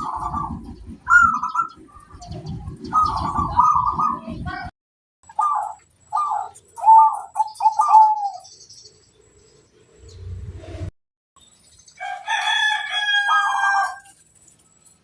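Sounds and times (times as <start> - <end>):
dove cooing: 0.0 - 4.6, 5.3 - 8.5, 13.0 - 14.1
rooster crowing: 12.0 - 14.2.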